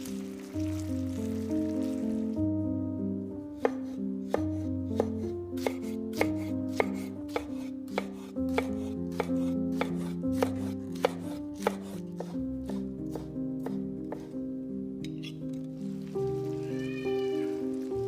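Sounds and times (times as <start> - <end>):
background music: 0.0 - 18.0
knife chopping on cutting board: 3.6 - 14.3.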